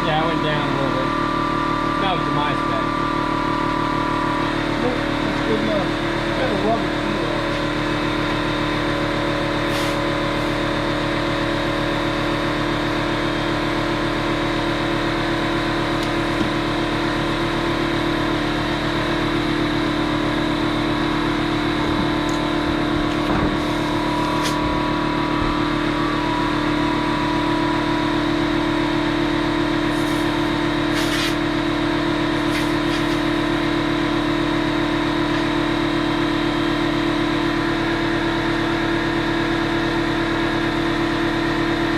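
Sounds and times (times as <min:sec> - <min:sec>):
air compressor humming: 0:00.0 - 0:41.9.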